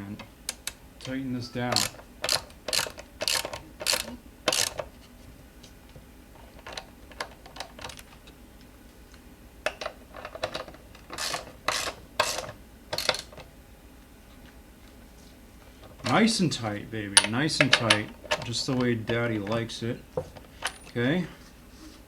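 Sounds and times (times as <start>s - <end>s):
ratchet wrench clicking: 1.7s - 4.8s, 11.2s - 13.3s.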